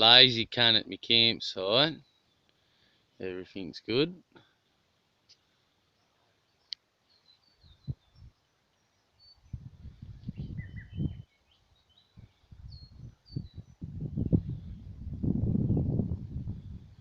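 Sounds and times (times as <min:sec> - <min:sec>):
small birds chirping: 0:01.8 - 0:03.2, 0:04.2 - 0:14.9.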